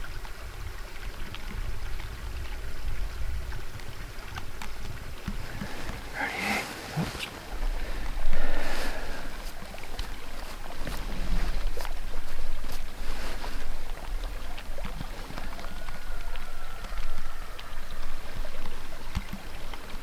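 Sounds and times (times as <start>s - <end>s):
small ticks: 0.0s - 6.3s, 6.9s - 20.0s
faint thin high tone: 6.1s - 7.5s.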